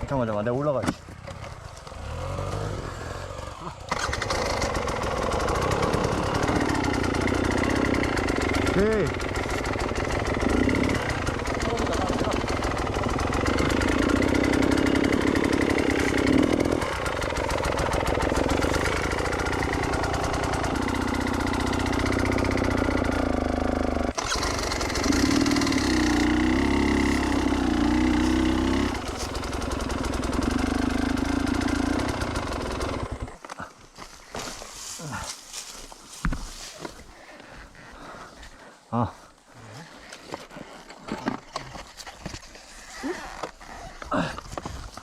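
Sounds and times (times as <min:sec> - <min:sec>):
dirt bike engine revving: 0:01.3 - 0:33.4.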